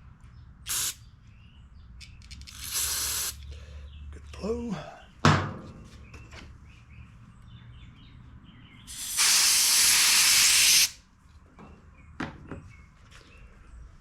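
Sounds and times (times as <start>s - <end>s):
pressurized spray hissing: 0.7s - 1.0s, 2.6s - 3.4s, 8.9s - 11.0s.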